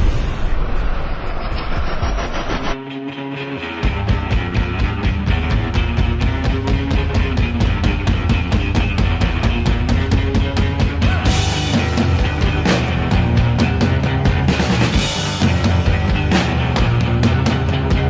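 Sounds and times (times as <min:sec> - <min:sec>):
rock music with driving drums: 0:02.6 - 0:18.0.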